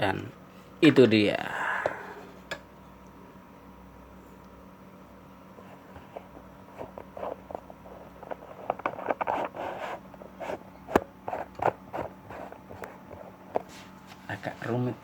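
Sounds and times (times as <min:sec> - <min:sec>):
metal case clicks and scrapes: 0:06.8 - 0:10.0.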